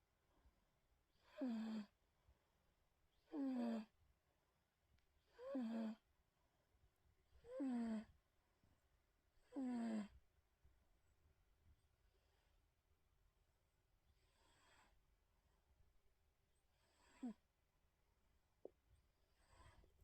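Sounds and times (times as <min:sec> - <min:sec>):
cat snoring: 0:01.2 - 0:01.9, 0:03.2 - 0:03.9, 0:05.3 - 0:06.0, 0:07.4 - 0:08.1, 0:09.4 - 0:10.2, 0:14.2 - 0:15.0, 0:16.7 - 0:17.4, 0:19.4 - 0:19.9.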